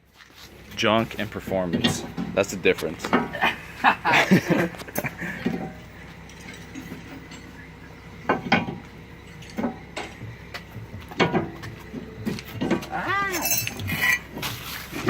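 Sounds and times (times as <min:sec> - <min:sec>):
metallic clinks of tools: 0:05.0 - 0:07.6, 0:13.3 - 0:14.2.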